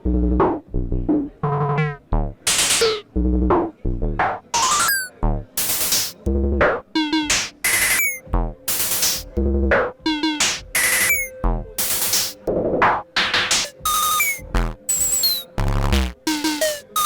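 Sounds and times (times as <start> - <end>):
deep kick drums: 0.0 - 1.3, 2.1 - 2.4, 5.2 - 5.6, 8.3 - 8.7, 9.3 - 11.8, 13.8 - 14.9, 15.6 - 16.3.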